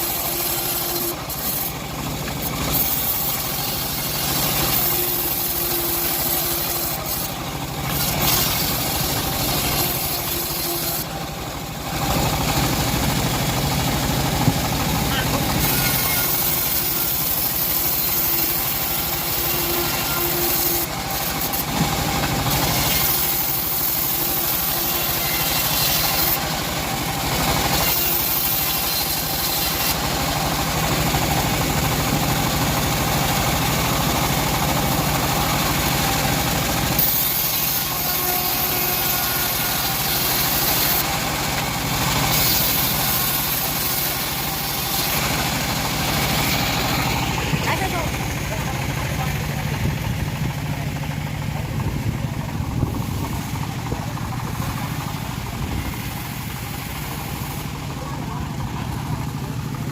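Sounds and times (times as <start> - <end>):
band sawmill sawing wood: 0.0 - 59.9.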